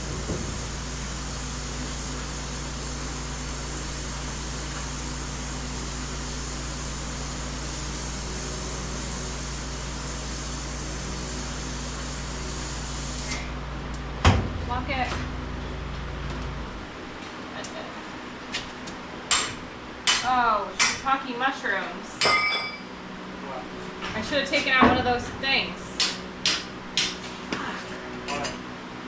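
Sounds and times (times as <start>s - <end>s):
fan-like hiss: 0.0s - 15.4s.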